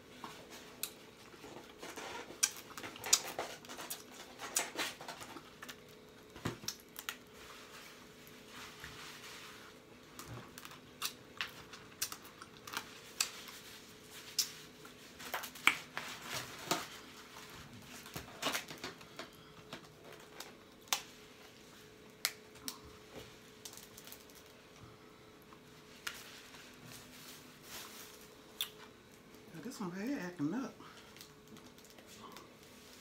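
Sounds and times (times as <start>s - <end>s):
crab shells cracking: 10.2s - 13.4s.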